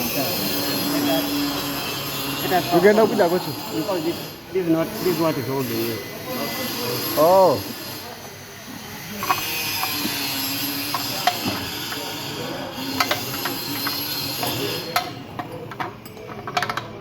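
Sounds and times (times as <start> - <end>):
hand tools clicking on metal: 9.2 - 12.2, 12.9 - 17.0.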